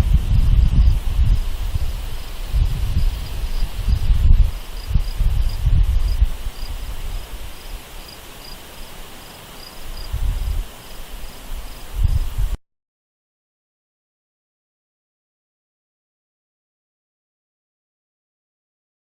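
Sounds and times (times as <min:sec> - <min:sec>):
insect chirping: 0:00.5 - 0:12.4.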